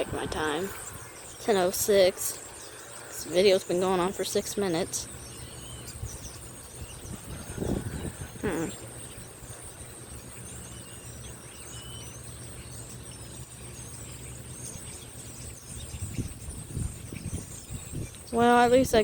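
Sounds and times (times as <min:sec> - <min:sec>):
bird chirps: 0:00.0 - 0:19.0
high-pitched insect drone: 0:00.0 - 0:19.0
low steady hum: 0:00.0 - 0:19.0
brief vocal call: 0:08.4 - 0:08.9.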